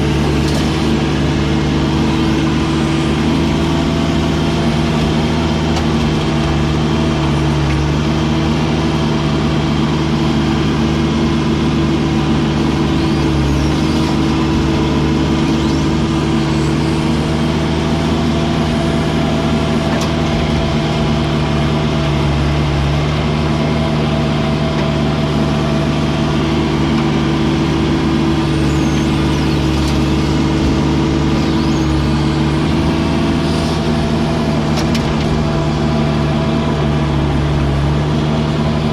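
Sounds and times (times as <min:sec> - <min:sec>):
heavy diesel engine running: 0:00.0 - 0:38.9.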